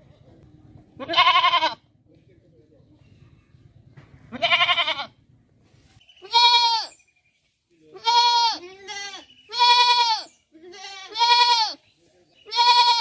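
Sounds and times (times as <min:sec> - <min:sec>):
animal bleating: 0:01.0 - 0:01.8, 0:04.3 - 0:05.2, 0:06.2 - 0:06.9, 0:08.0 - 0:11.8, 0:12.4 - 0:13.0.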